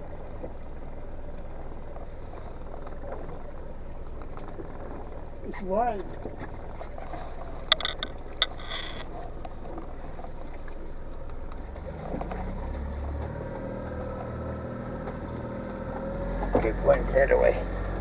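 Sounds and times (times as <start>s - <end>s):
boat motor running: 0.0s - 18.0s
sharp clicks and knocks: 7.7s - 9.0s.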